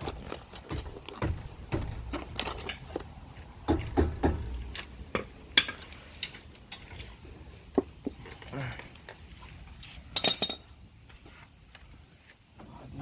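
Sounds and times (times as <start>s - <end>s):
metal tools clinking: 1.8s - 3.2s, 10.2s - 10.7s.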